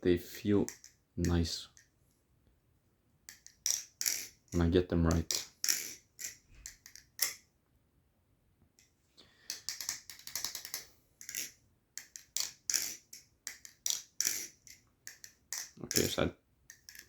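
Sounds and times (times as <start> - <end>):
butterfly knife handles clacking: 0.4 - 1.9, 3.3 - 7.5, 9.5 - 17.0.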